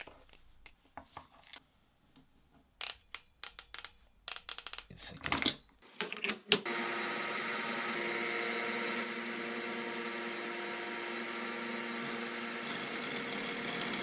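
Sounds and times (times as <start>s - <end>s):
electric motor humming: 6.6s - 14.0s.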